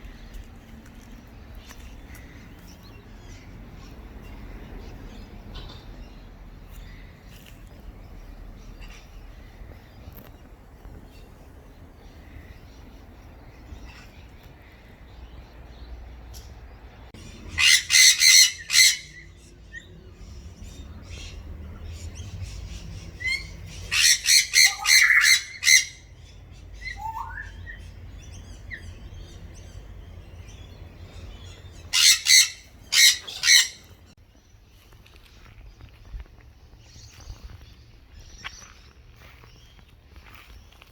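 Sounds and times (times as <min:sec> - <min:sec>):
cockatoos screeching: 0:31.9 - 0:33.9.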